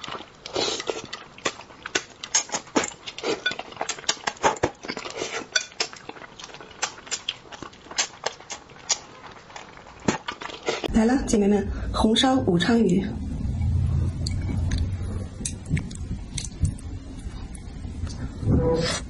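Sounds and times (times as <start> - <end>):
biting and chewing: 0.0 - 10.9.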